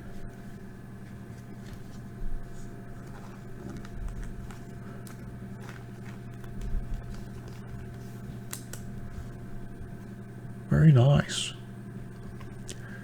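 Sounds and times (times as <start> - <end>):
electrical hum: 0.0 - 13.0
trading cards clicking and rustling: 1.3 - 9.1.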